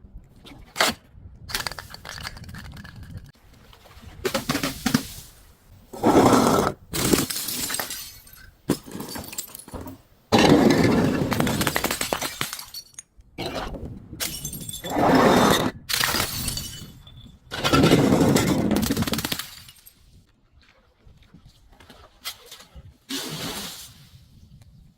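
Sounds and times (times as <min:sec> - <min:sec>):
broken glass crunching and tinkling: 0:07.0 - 0:09.8, 0:11.4 - 0:13.1, 0:14.2 - 0:14.9, 0:15.9 - 0:17.9, 0:18.9 - 0:20.1
glass bottles shattering: 0:07.0 - 0:10.6, 0:11.2 - 0:13.6, 0:14.2 - 0:15.1, 0:15.9 - 0:20.0.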